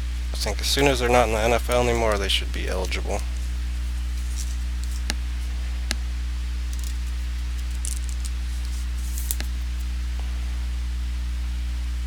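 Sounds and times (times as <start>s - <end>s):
low electrical hum: 0.0s - 12.0s
trading cards clicking and rustling: 0.2s - 6.0s, 6.7s - 9.9s.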